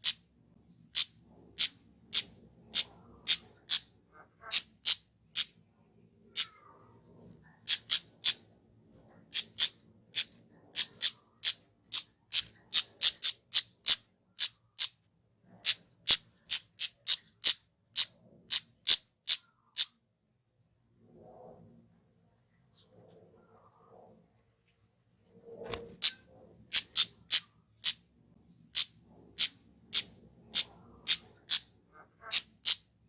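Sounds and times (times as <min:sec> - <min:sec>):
bird giving high-pitched calls: 0:00.0 - 0:00.2, 0:00.9 - 0:05.6, 0:06.3 - 0:06.7, 0:07.7 - 0:08.4, 0:09.3 - 0:15.0, 0:15.6 - 0:20.0, 0:25.8 - 0:28.0, 0:28.7 - 0:32.9.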